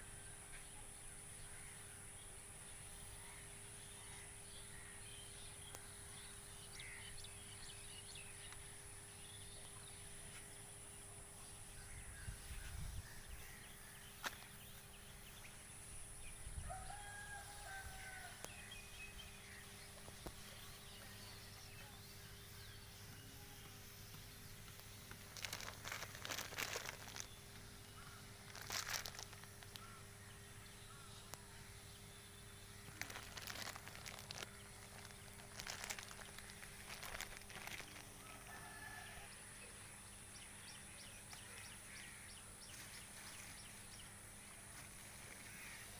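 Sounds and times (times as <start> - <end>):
faint bird calls: 16.6 - 45.9.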